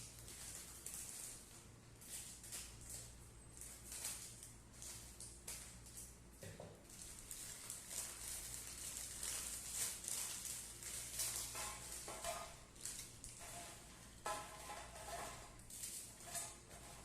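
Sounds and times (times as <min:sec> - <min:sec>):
scratching and rustling: 0:06.8 - 0:17.0.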